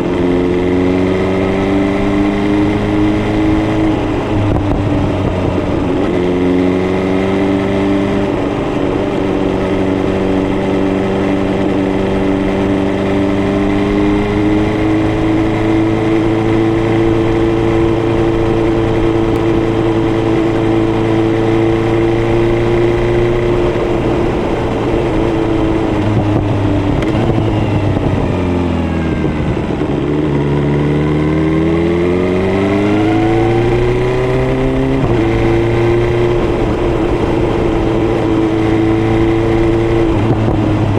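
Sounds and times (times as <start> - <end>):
motorcycle engine running: 0.0 - 40.9.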